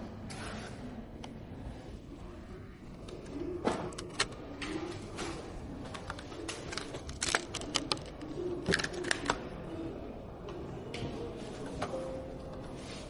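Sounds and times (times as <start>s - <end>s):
computer parts clicking and tapping: 5.9s - 9.4s.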